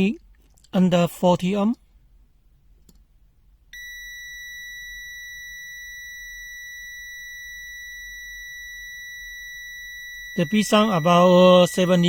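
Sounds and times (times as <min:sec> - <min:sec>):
multimeter continuity beep: 0:03.7 - 0:12.0.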